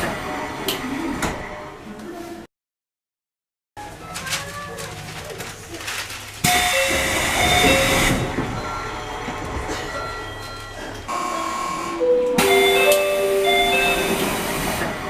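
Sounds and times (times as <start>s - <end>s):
train doors moving: 6.4s - 15.0s
train door chime: 6.5s - 15.0s.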